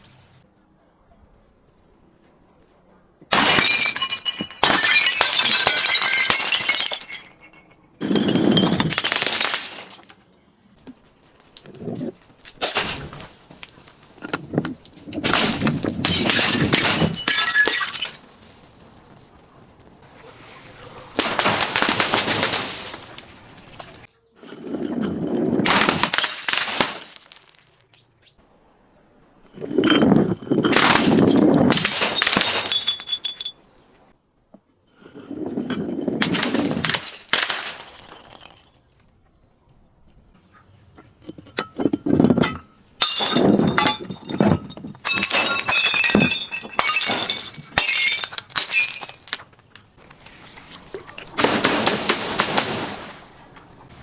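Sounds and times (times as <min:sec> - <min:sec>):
glass crushing and shattering: 0:03.3 - 0:10.2, 0:12.4 - 0:19.0, 0:21.2 - 0:28.1, 0:29.5 - 0:33.6, 0:35.1 - 0:39.1, 0:41.2 - 0:50.0, 0:51.3 - 0:53.1.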